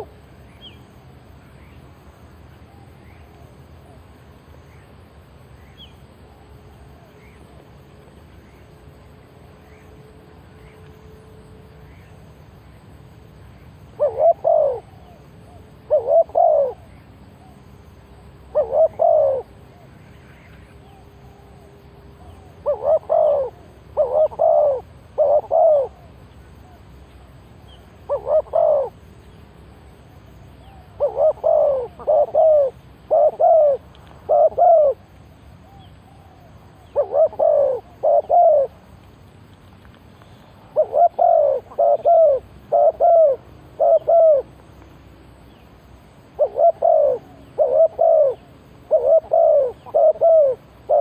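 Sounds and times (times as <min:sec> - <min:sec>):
dove cooing: 0:13.9 - 0:17.6, 0:18.4 - 0:26.8, 0:28.0 - 0:29.0, 0:30.6 - 0:38.8, 0:40.6 - 0:44.5, 0:46.3 - 0:51.0.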